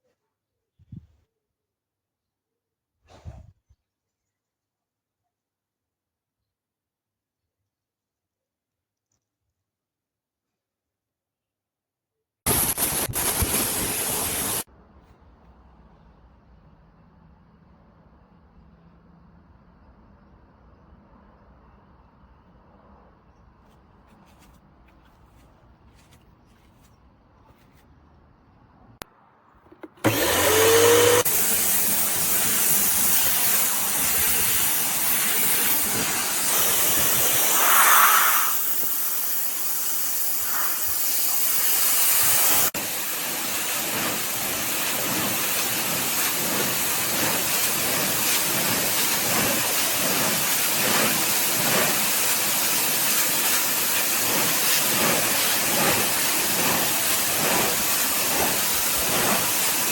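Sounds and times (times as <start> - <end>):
pressure washer spraying: 12.5 - 14.7, 30.0 - 59.9
pressure washer motor whine: 29.8 - 37.7.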